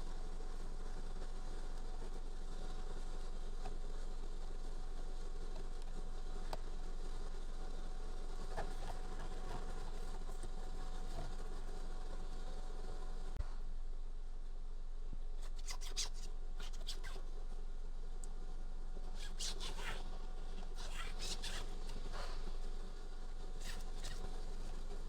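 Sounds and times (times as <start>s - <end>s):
background hum: 0.0s - 25.0s
hands rubbing steering wheel: 15.4s - 17.2s, 19.2s - 20.1s, 20.7s - 22.3s, 23.6s - 24.3s.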